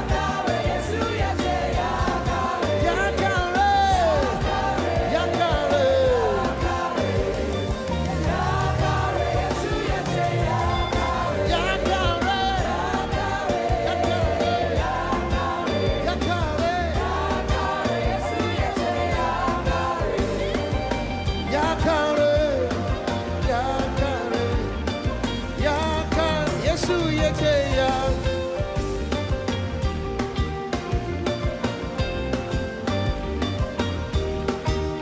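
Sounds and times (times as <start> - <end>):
person singing: 0.0 - 28.8
gospel band playing: 0.0 - 35.0.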